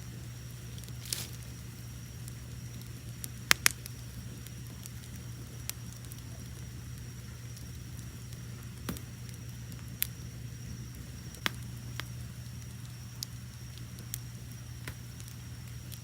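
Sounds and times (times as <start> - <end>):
crickets chirping: 0.0 - 16.0
low steady rumble: 0.0 - 16.0
wood fire crackling and popping: 0.0 - 16.0.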